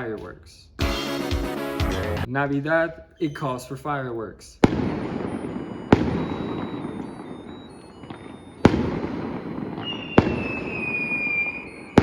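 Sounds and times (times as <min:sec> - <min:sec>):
high falling whistle: 0:03.2 - 0:03.8, 0:04.9 - 0:12.0
fireworks bangs: 0:04.6 - 0:12.0.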